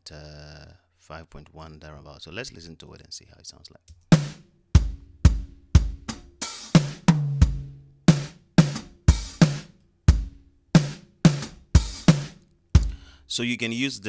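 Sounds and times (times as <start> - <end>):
drum pattern: 4.1 - 13.2.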